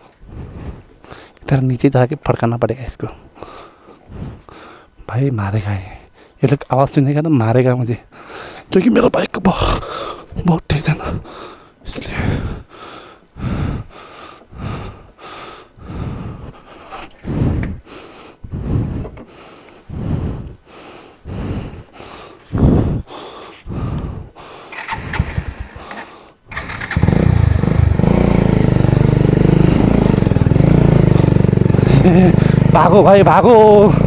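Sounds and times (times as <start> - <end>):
motorcycle engine cranking: 24.7 - 34.0
motorcycle engine running: 24.8 - 34.0.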